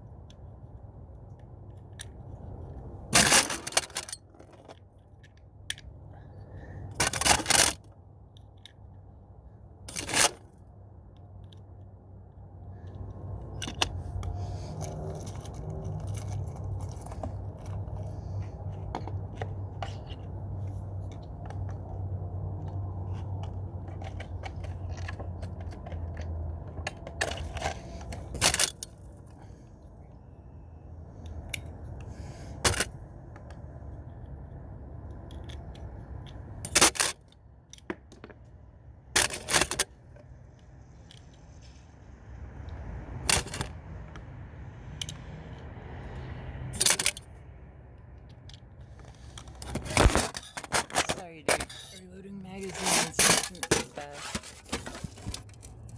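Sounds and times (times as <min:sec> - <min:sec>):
pellets loaded into magazines: 0:49.0 - 0:55.9.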